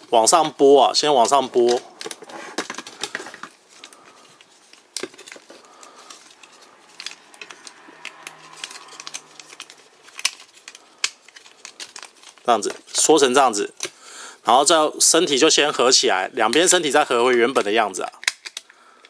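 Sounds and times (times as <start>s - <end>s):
plastic toy parts clicking: 6.9s - 13.0s, 16.5s - 18.8s.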